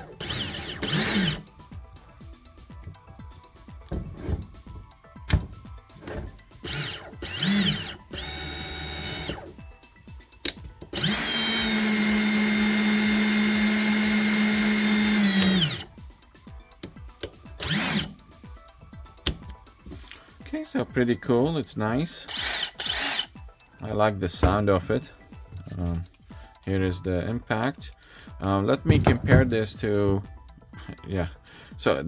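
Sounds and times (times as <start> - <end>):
cordless drill motor whine: 0.0 - 1.4, 6.6 - 9.5, 11.0 - 15.9, 17.6 - 18.1, 22.3 - 23.3
drill clicks: 0.0 - 1.5, 5.2 - 9.5, 10.4 - 15.9, 17.6 - 18.2, 22.3 - 23.4.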